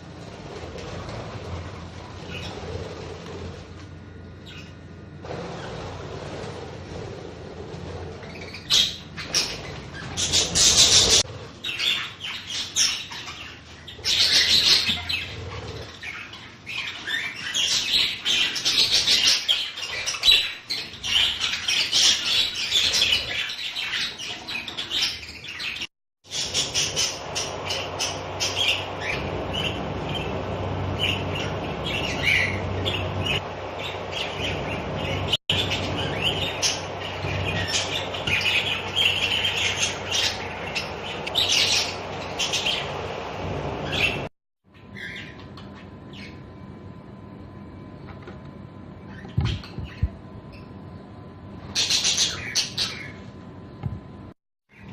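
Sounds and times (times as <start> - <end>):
budgerigars chattering and chirping: 8.3 - 43.1, 51.8 - 53.2.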